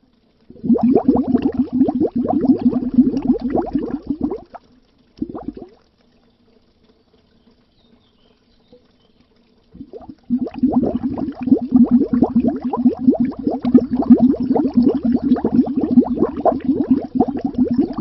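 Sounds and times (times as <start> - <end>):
faint low hum: 0.0 - 18.0
underwater air bubbles: 0.4 - 6.1, 9.6 - 18.0.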